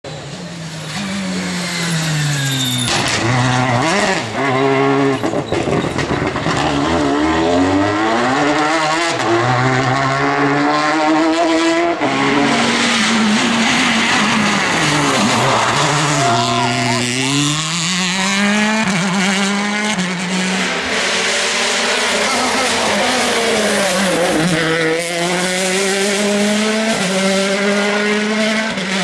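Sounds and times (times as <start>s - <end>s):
rally car engines revving: 0.1s - 29.0s.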